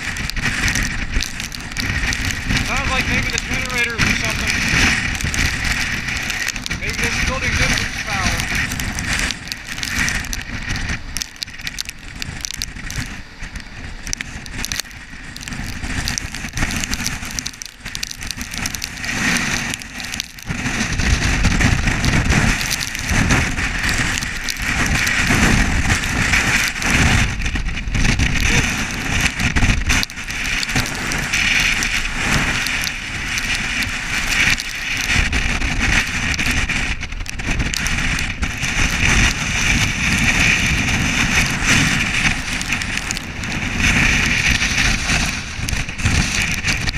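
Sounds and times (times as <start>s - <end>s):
rain: 0.0s - 46.9s
strong wind: 0.0s - 46.9s
wind buffeting microphone: 0.0s - 46.9s.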